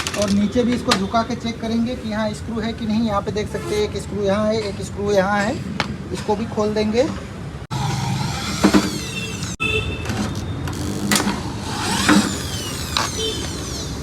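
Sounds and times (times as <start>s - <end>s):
electric screwdriver whirring: 7.8s - 9.6s, 10.3s - 14.0s.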